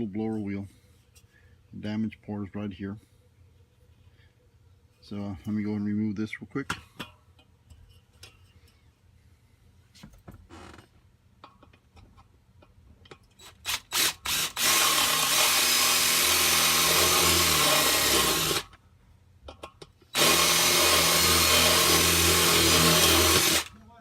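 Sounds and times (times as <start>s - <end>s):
electric power tool running: 13.7s - 18.7s, 20.2s - 23.7s.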